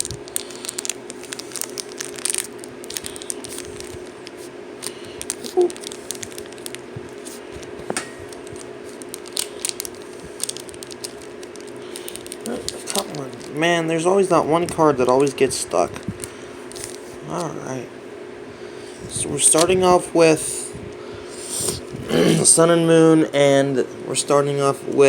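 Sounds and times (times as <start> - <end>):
foil wrapper crinkling: 0.0 - 17.7
faint steady hum: 0.0 - 25.0.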